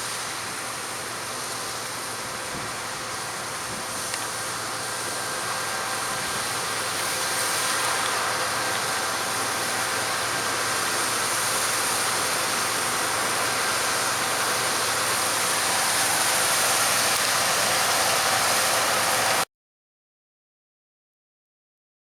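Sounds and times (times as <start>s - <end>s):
harvest machinery hissing: 0.0s - 19.5s.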